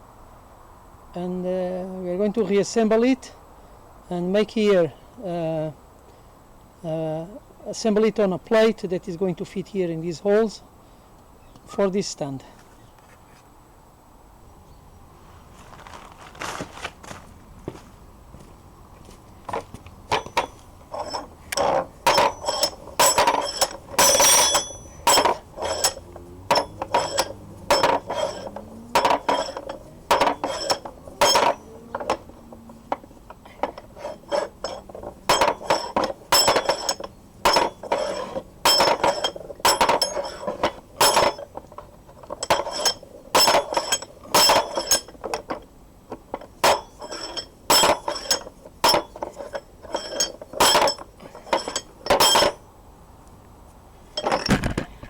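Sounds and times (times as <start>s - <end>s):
metal clinks and knocks: 19.4s - 52.7s, 54.1s - 55.0s.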